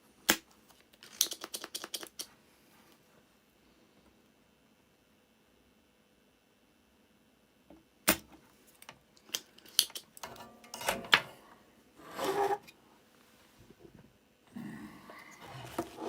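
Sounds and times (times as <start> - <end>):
scraping rustle: 12.0 - 12.7.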